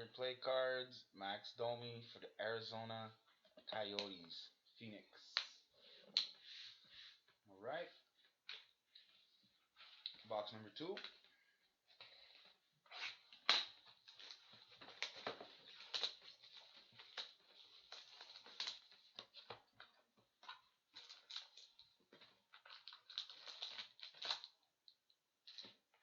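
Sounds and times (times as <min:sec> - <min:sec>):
packaging crinkling and tearing: 0:12.9 - 0:24.7.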